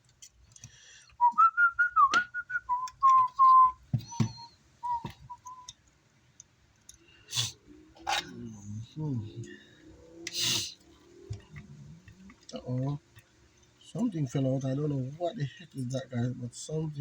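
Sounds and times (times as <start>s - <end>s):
person whistling a tune: 1.2s - 5.7s.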